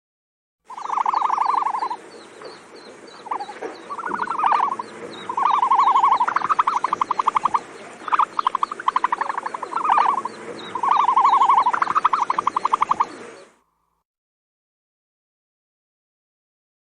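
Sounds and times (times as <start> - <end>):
ostrich rattling trills: 0.7 - 13.7
small high chirps: 0.7 - 14.0.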